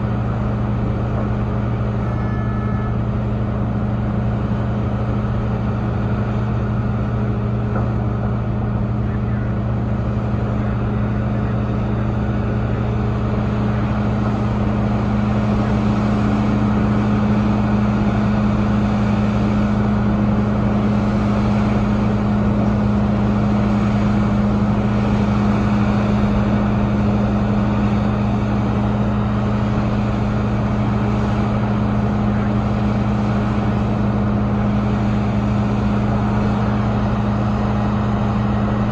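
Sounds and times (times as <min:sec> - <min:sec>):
excavator diesel engine droning: 0:00.0 - 0:38.9.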